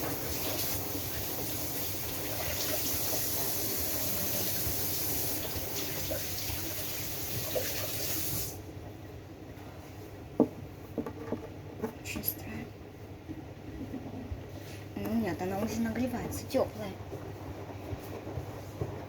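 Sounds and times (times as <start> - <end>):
washing machine filling with water: 0.0 - 9.6, 13.3 - 19.0
washing machine low hum: 0.0 - 19.0.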